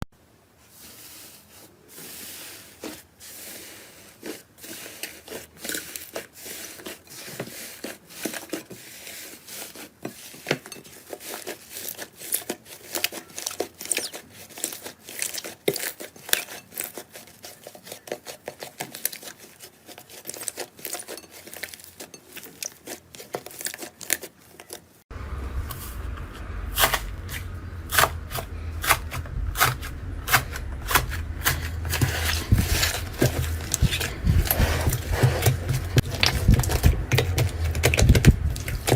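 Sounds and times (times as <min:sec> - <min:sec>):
slime squishing and crackling: 0:04.1 - 0:24.9, 0:26.8 - 0:38.9
low hum: 0:25.1 - 0:38.9.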